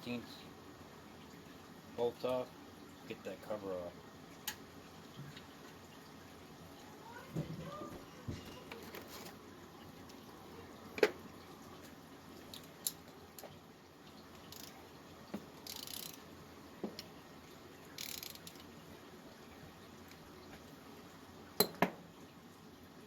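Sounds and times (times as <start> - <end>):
socket ratchet clicking: 14.5 - 14.8, 15.7 - 16.2, 18.0 - 18.6.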